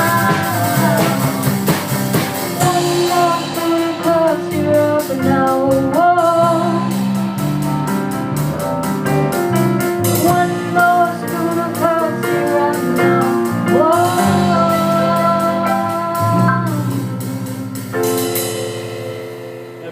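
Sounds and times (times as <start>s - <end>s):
person singing: 0.0s - 7.2s, 10.0s - 17.9s
guitar accompaniment: 0.0s - 19.9s.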